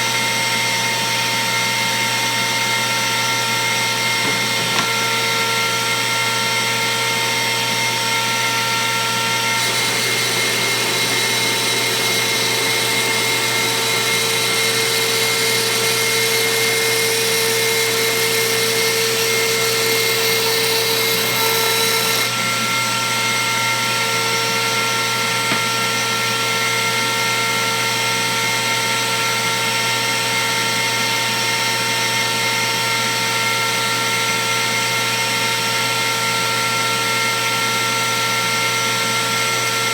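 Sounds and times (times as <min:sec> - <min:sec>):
router whining: 0:02.1 - 0:29.0
router bit cutting acrylic: 0:03.9 - 0:06.7, 0:09.1 - 0:26.9.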